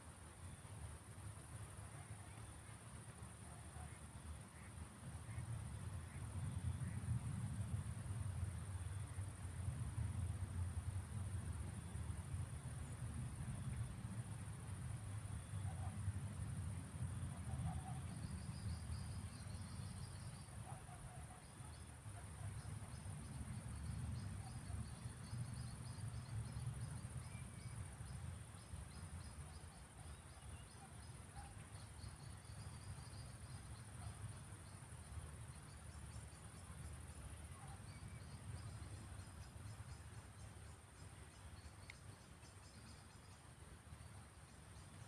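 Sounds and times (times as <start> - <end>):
insects trilling: 10.2 - 45.0.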